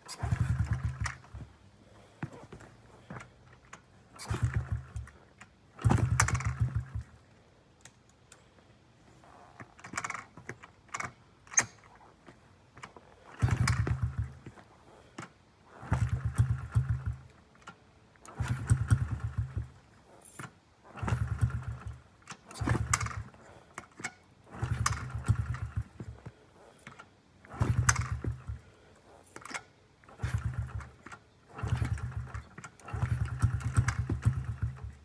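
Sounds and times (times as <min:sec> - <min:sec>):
engine being kick-started: 0:00.1 - 0:01.5, 0:03.1 - 0:07.1, 0:09.8 - 0:10.4, 0:13.3 - 0:14.6, 0:15.2 - 0:35.0.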